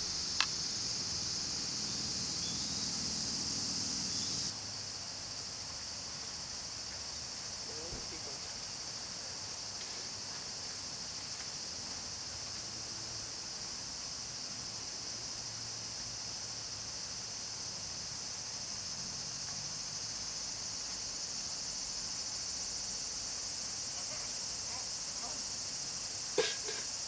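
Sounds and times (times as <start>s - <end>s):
insects shrilling: 0.0s - 4.5s, 22.2s - 27.0s.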